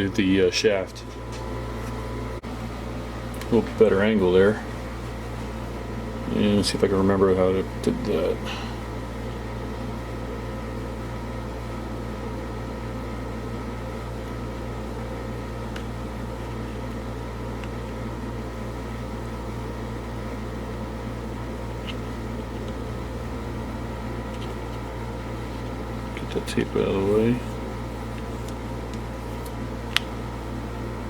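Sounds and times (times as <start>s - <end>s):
low mechanical hum: 0.0s - 31.0s.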